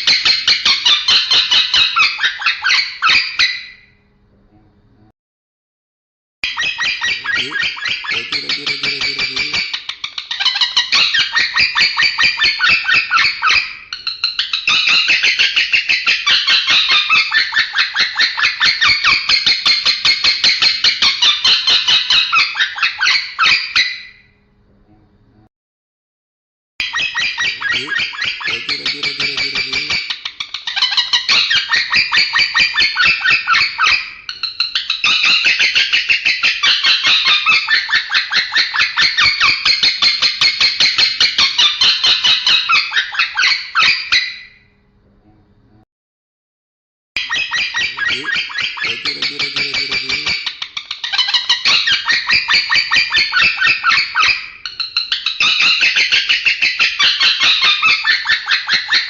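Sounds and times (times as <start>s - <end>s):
lovebird chattering: 6.4s - 23.9s, 26.8s - 44.3s, 47.2s - 59.0s.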